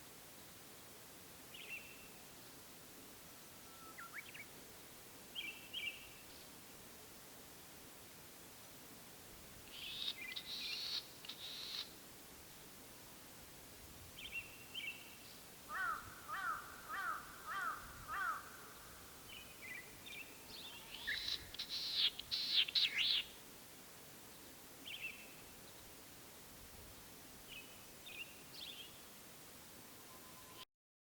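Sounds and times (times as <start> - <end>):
quick sweeping high bird calls: 20.6 - 23.3.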